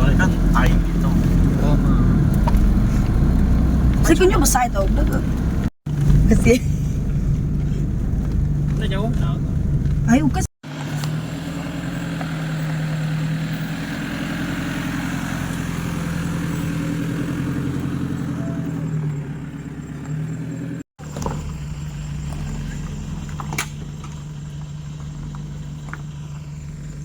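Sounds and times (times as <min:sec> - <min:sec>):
vehicle engine humming: 0:00.0 - 0:27.0.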